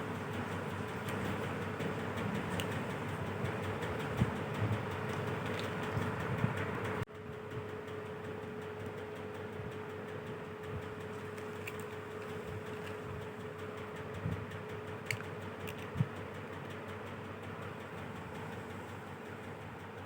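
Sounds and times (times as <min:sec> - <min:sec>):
faint hum: 0:00.0 - 0:20.0
light clicks and taps: 0:00.1 - 0:07.0, 0:10.7 - 0:19.5.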